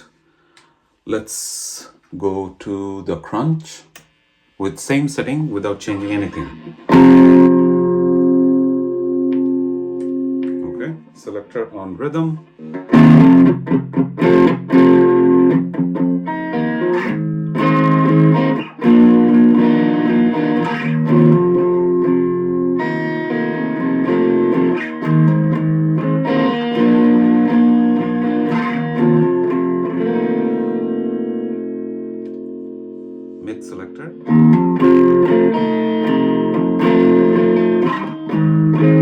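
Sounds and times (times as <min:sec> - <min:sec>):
electric guitar chords and riff: 0:05.4 - 0:11.2, 0:12.4 - 0:39.0.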